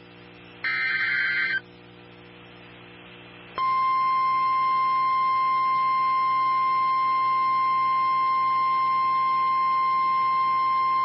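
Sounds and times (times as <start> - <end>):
steady high alarm tone: 0.7 - 1.6.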